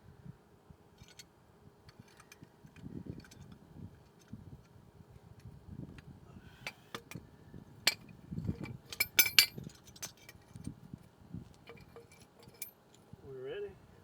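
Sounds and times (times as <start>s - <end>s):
small metal parts clinking: 7.9s - 10.7s, 11.6s - 13.0s.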